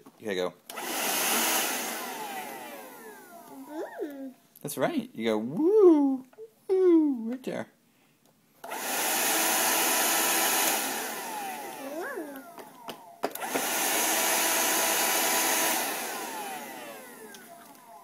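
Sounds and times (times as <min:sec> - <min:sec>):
hand vacuum motor running: 0:00.7 - 0:03.8, 0:08.6 - 0:18.0.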